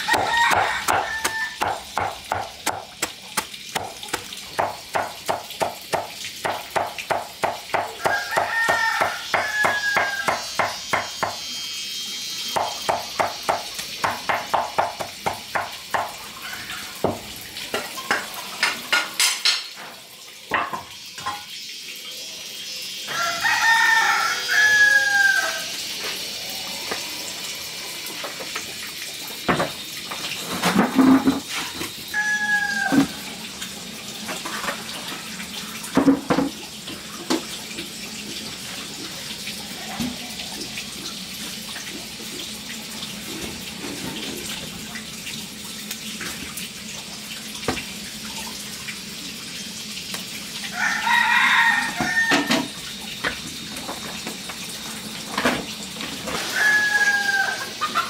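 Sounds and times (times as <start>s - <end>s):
rooster crowing: 0.0s - 1.8s, 8.0s - 10.7s, 23.1s - 25.8s, 32.1s - 33.2s, 50.7s - 52.7s, 56.4s - 58.0s
chickens calling: 56.4s - 58.0s.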